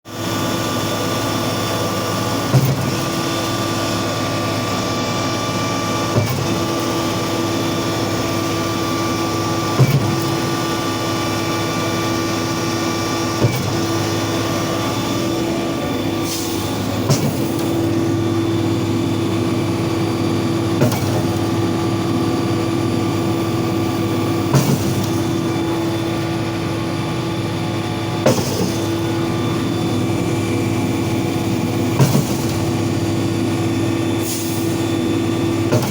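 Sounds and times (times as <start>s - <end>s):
concrete pump engine running: 0.1s - 35.9s
pump stroke clunk: 13.4s - 18.1s, 24.5s - 25.4s.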